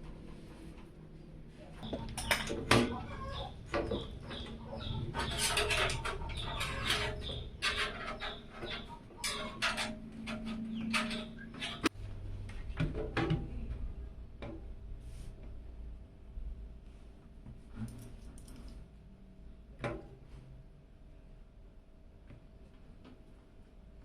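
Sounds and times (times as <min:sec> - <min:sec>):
computer parts clicking and scraping: 0:03.3 - 0:11.9.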